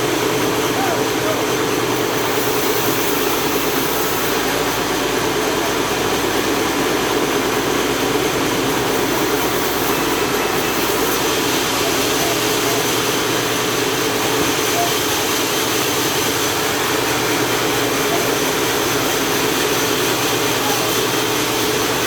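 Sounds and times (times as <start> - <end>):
chainsaw cutting log: 8.2 - 22.0.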